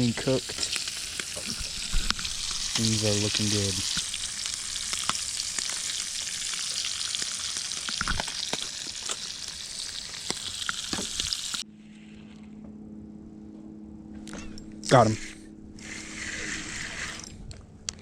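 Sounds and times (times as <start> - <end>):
fish frying in hot oil: 0.0 - 11.6
low steady hum: 11.6 - 18.0.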